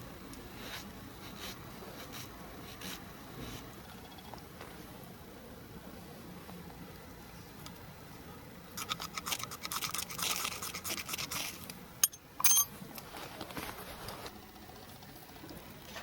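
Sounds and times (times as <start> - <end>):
scrape with metallic ring: 12.0 - 12.7.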